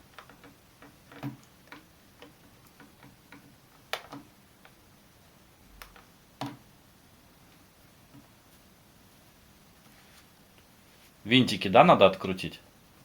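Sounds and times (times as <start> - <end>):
plastic toy clicks and taps: 0.1 - 4.8.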